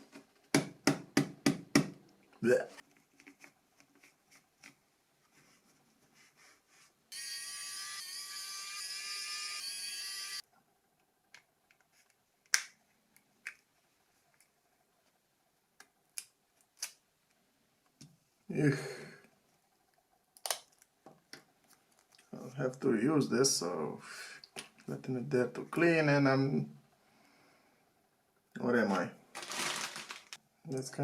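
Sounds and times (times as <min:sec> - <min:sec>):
small electric motor buzzing: 0:07.1 - 0:10.4.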